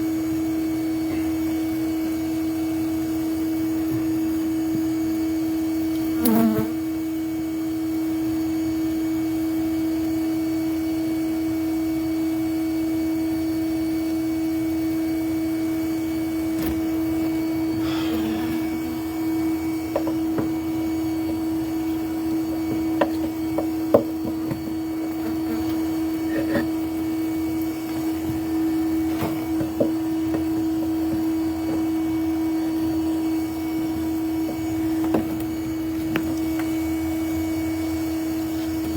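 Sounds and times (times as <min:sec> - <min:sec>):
steady machine hum: 0:11.9 - 0:38.9
honeybees buzzing: 0:15.2 - 0:38.9
knocks and scrapes on hive: 0:16.6 - 0:26.9.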